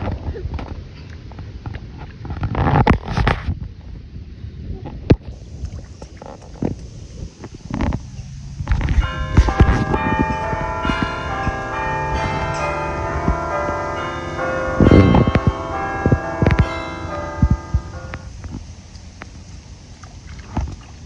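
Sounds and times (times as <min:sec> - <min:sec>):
bells ringing: 0:08.8 - 0:18.4.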